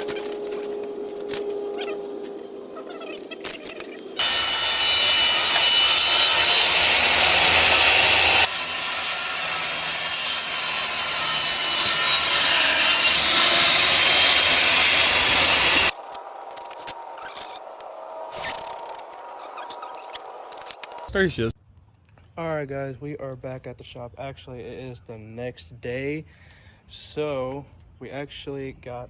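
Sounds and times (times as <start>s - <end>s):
power tool cutting wood: 3.1s - 21.0s.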